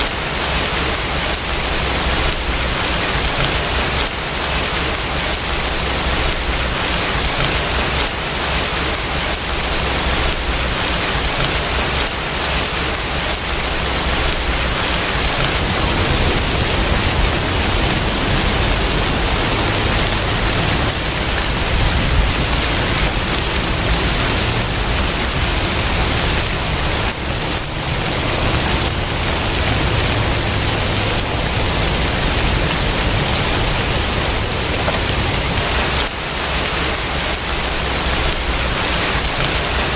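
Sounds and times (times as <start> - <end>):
steady rain falling: 0.0 - 39.9
low rumble: 13.6 - 35.7.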